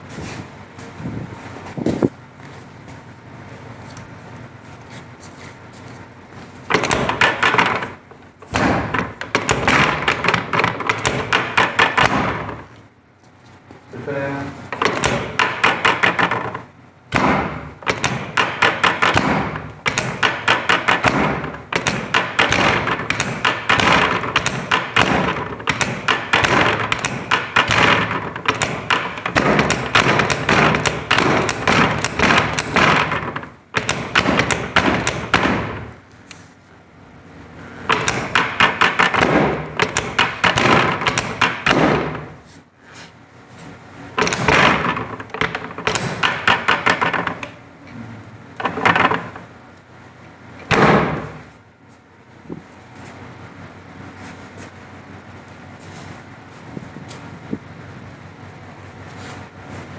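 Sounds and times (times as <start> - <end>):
rapid percussive thumps on body: 6.7 - 12.7, 14.7 - 36.0, 37.9 - 42.4.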